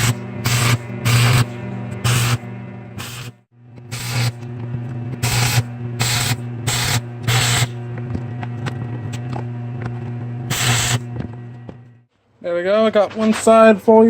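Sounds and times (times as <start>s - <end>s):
welding arc hiss: 0.0s - 2.4s, 3.0s - 4.4s, 5.2s - 7.7s, 10.5s - 11.0s
electrical hum: 0.0s - 12.1s.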